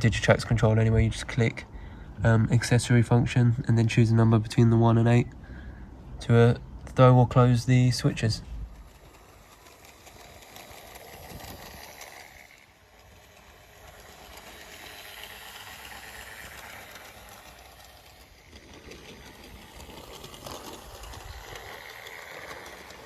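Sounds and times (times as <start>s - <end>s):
model train running on track: 6.2s - 23.0s.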